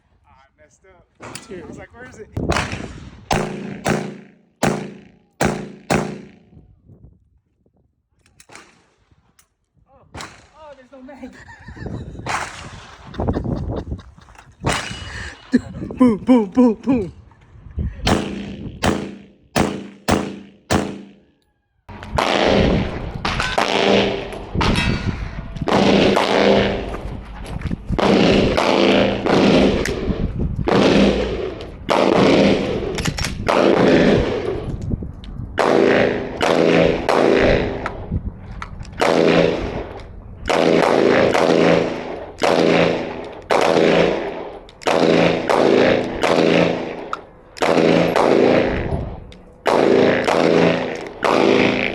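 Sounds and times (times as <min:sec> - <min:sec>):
single gunshots: 0:02.5 - 0:06.5, 0:18.1 - 0:21.2, 0:40.5 - 0:48.8, 0:49.7 - 0:51.9
rapid gunfire bursts: 0:03.3 - 0:06.4, 0:18.1 - 0:21.1.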